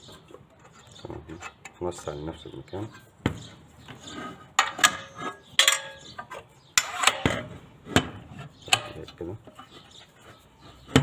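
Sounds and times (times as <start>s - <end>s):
saw blade metal parts clinking: 4.6s - 7.3s.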